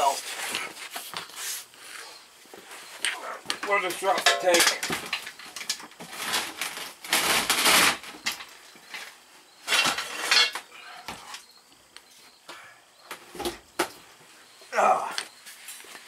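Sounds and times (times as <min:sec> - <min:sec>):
metal tools clinking: 0:03.6 - 0:05.8, 0:09.6 - 0:10.7.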